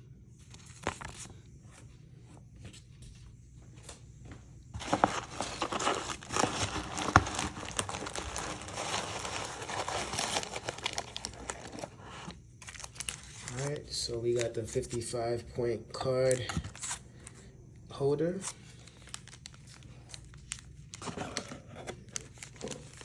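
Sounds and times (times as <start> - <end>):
packaging crinkling and tearing: 0.4 - 1.4, 4.8 - 15.1, 16.2 - 17.5, 18.2 - 23.0.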